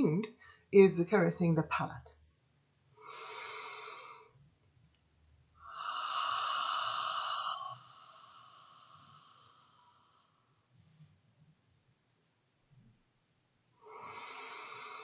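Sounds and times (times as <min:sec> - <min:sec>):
woman breathing through mouth: 0:03.0 - 0:04.4, 0:05.6 - 0:10.6, 0:13.8 - 0:15.0.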